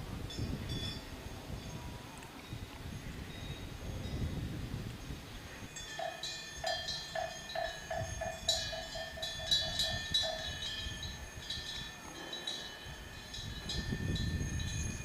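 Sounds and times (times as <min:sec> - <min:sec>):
metal bells ringing: 0:05.5 - 0:15.0.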